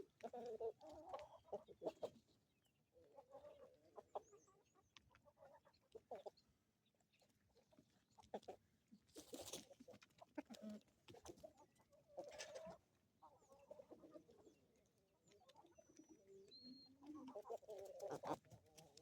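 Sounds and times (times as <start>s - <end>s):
chickens clucking: 0.0s - 19.0s.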